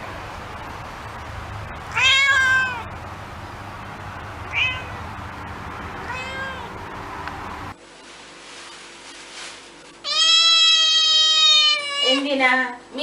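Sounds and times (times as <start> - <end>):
cat meowing: 1.9 - 2.9, 4.5 - 5.0, 6.0 - 6.8, 10.0 - 12.2.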